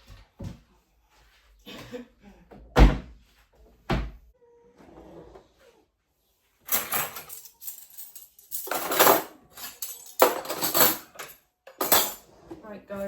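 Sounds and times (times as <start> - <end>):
dishes and cutlery clattering: 6.7 - 12.3.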